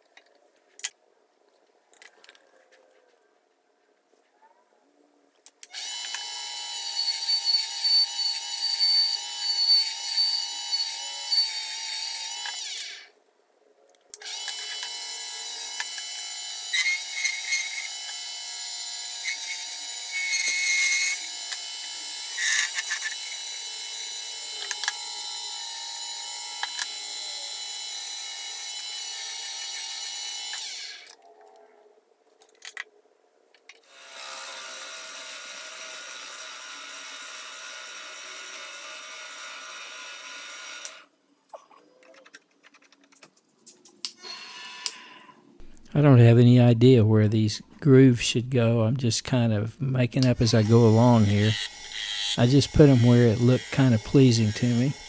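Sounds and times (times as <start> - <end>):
wood lathe motor whine: 5.8 - 13.0, 14.2 - 31.1, 50.4 - 55.0
tool scraping spinning wood: 50.2 - 55.0.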